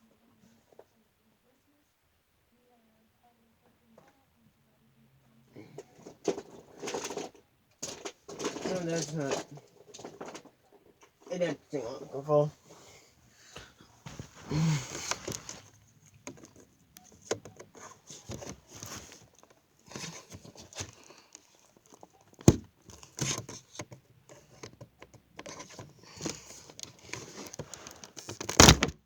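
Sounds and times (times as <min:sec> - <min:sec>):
packaging rustling and crinkling: 0:14.0 - 0:29.0.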